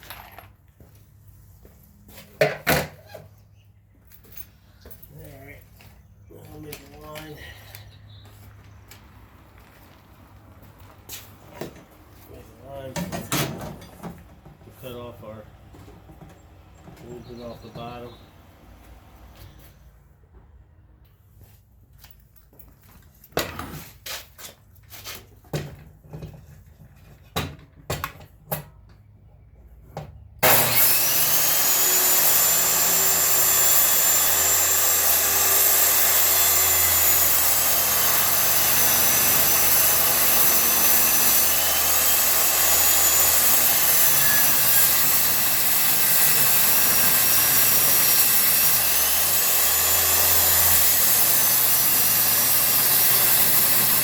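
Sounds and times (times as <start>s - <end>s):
power saw cutting wood: 30.4s - 54.0s.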